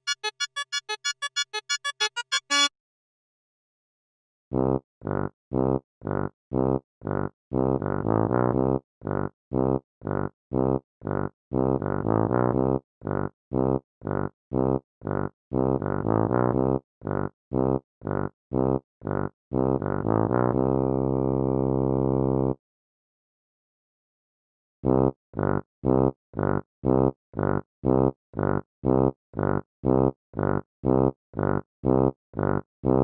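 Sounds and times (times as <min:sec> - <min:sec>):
cartoon march on buzzy wind instrument: 0:00.0 - 0:02.7.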